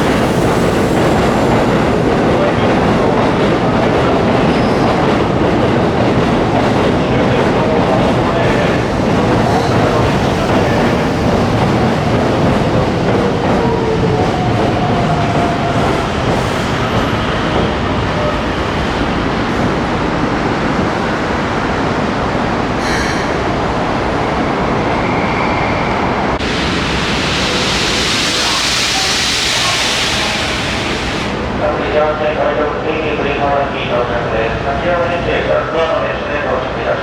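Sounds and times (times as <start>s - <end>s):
train wheels rumbling on rail: 0.0s - 37.0s.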